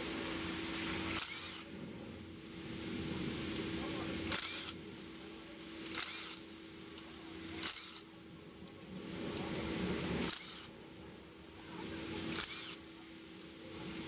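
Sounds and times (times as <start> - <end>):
ratchet wrench clicking: 1.2 - 1.6, 4.3 - 4.8, 5.9 - 8.0, 10.3 - 10.7, 12.3 - 12.8.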